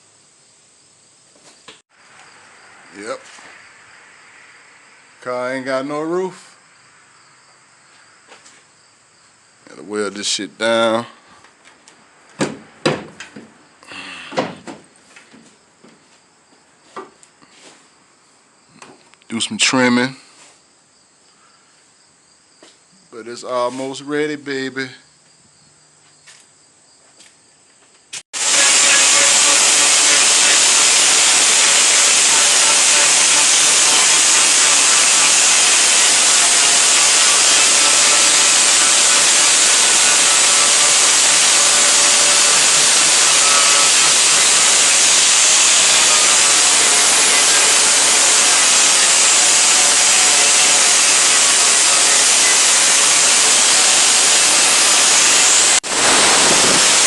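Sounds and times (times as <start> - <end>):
power metalworking tool hissing: 13.8 - 14.6, 28.4 - 57.0.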